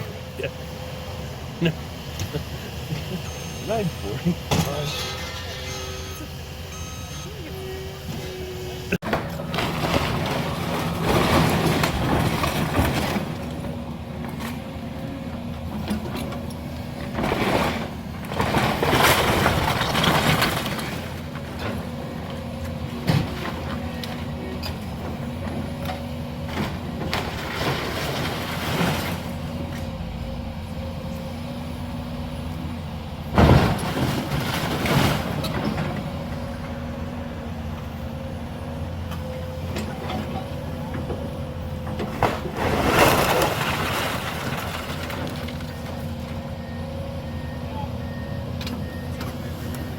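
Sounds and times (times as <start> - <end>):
diesel machine running: 0.0 - 49.9
structure crashing and crunching: 9.0 - 14.6, 16.0 - 24.3, 26.5 - 29.8, 33.2 - 36.4, 39.8 - 46.5.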